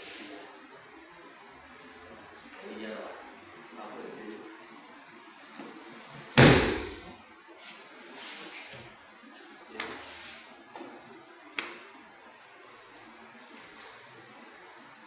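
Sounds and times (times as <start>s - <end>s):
body thudding on a mat: 6.4s - 7.1s
sharp slap: 6.4s - 7.1s.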